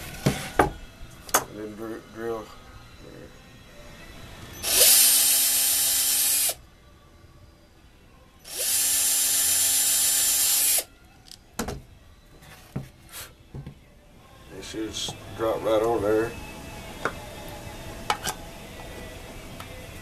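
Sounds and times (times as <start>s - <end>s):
power drill whining: 4.6s - 6.6s, 8.5s - 10.9s.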